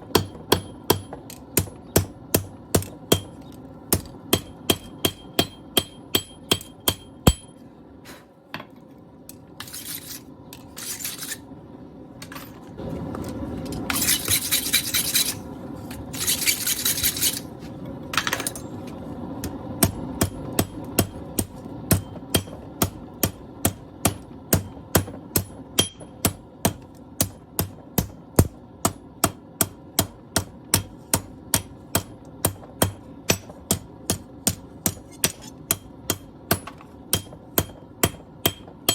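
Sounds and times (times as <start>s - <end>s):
scraping strokes on steel: 9.6s - 11.5s, 13.9s - 17.8s, 34.9s - 36.2s.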